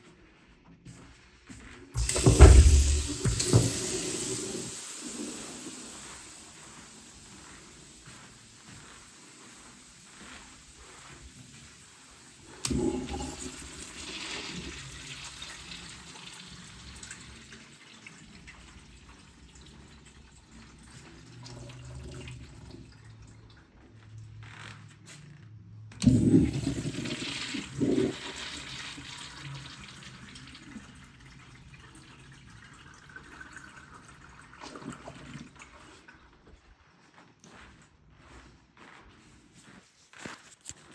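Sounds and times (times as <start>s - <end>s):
toilet flushing: 1.9s - 23.8s, 26.0s - 36.4s.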